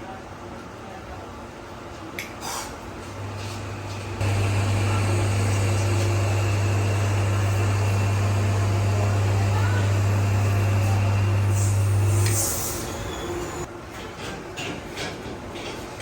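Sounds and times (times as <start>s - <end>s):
low machine hum: 3.0s - 13.7s.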